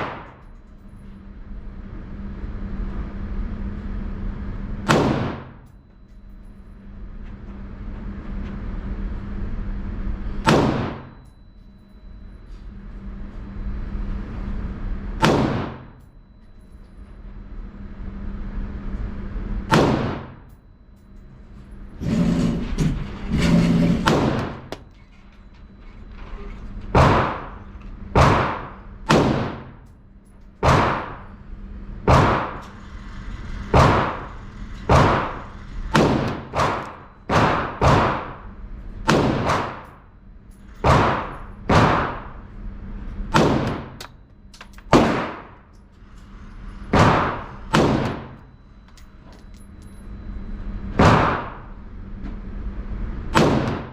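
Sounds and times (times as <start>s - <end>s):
rifle shots: 4.9s - 5.5s, 10.5s - 11.0s, 15.2s - 15.9s, 44.9s - 45.6s
low rumbling noise: 17.4s - 29.9s.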